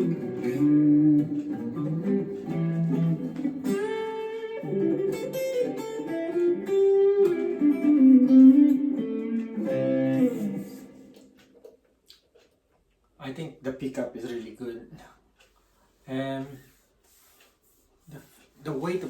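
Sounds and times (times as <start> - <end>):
electric guitar playing: 0.0 - 11.6.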